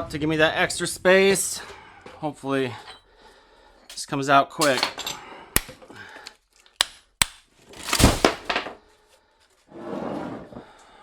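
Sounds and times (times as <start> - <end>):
metal clattering: 4.6 - 5.8, 6.8 - 8.8.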